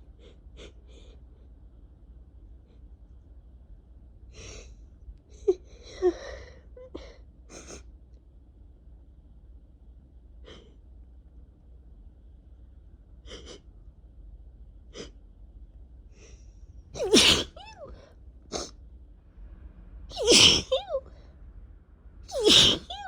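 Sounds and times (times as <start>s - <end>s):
person breathing: 16.1s - 16.6s
person sneezing: 17.0s - 18.7s, 20.1s - 21.1s, 22.3s - 23.0s.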